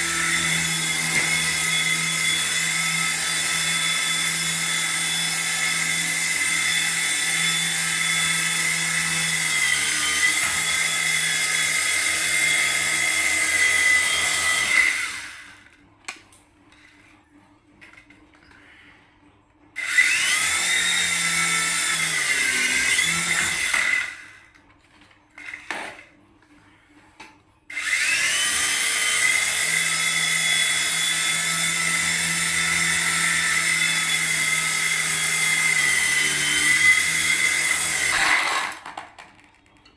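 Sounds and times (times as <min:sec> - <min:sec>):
small electric motor whining: 0:19.8 - 0:24.3, 0:27.7 - 0:38.8.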